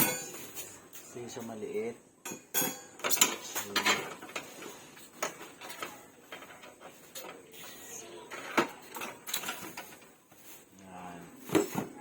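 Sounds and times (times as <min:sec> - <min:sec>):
packaging rustling and scraping: 0:03.6 - 0:12.0.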